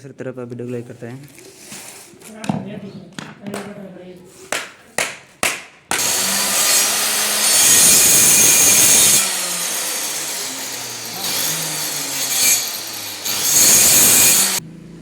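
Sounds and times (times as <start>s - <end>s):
power tool cutting wood: 5.9s - 14.6s.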